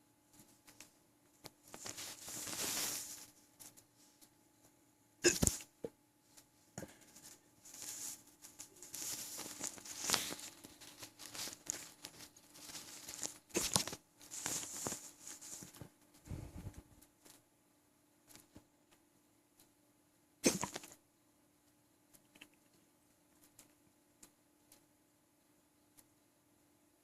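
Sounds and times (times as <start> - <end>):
man hiccuping: 5.2 - 5.5.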